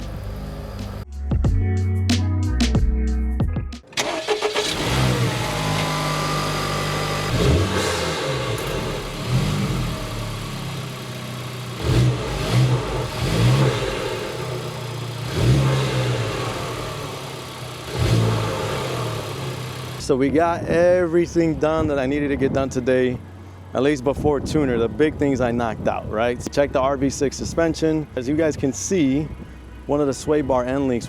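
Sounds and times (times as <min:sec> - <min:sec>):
car engine revving: 0:00.0 - 0:01.0, 0:03.9 - 0:20.1
background music: 0:00.0 - 0:05.2.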